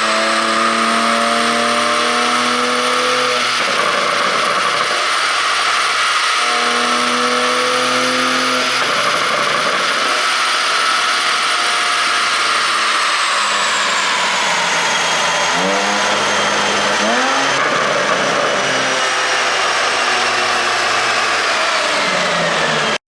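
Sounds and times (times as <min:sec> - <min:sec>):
car engine revving: 0:00.0 - 0:23.0
high whine: 0:12.2 - 0:23.0
loud rush of noise: 0:13.4 - 0:23.0.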